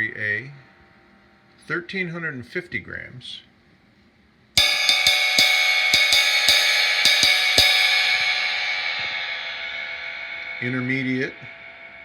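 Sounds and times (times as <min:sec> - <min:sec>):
cymbal ringing shimmer: 0:04.6 - 0:12.0
cymbal strikes: 0:04.6 - 0:12.0.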